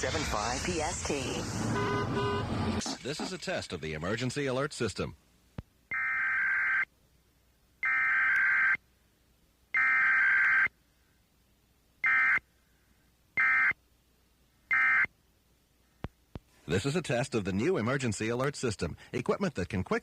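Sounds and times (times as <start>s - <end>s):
harsh buzzing data bursts: 0.0s - 2.8s.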